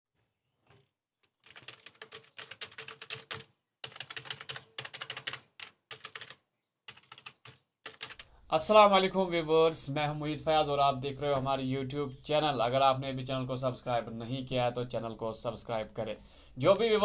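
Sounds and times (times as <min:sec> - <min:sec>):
typing on computer keyboard: 0:00.7 - 0:08.3.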